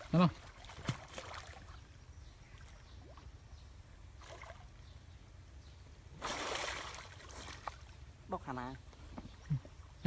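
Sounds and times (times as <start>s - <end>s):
water splashing: 0.0s - 1.9s, 4.2s - 4.8s, 6.2s - 8.0s.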